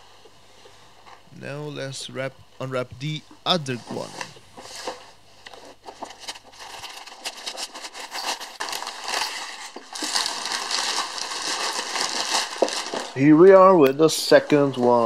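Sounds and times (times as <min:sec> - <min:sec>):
wrapping paper tearing and crumpling: 0:03.9 - 0:13.2.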